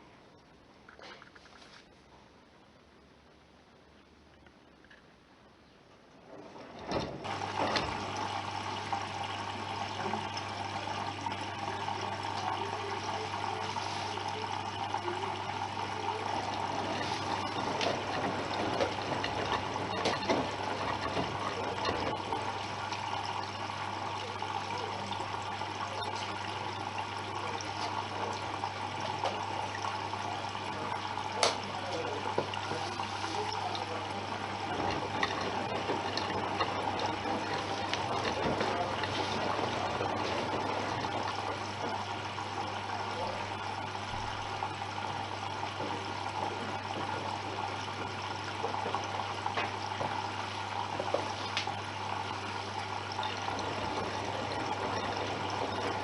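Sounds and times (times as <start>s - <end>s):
water rushing in washing machine: 6.0s - 56.0s
clicks and knocks: 16.4s - 23.1s, 34.6s - 42.1s.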